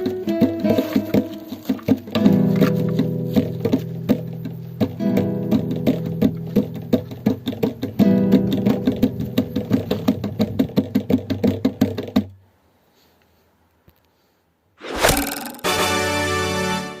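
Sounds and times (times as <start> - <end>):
music with plucked beat: 0.0 - 12.2
loud whoosh: 14.8 - 15.6.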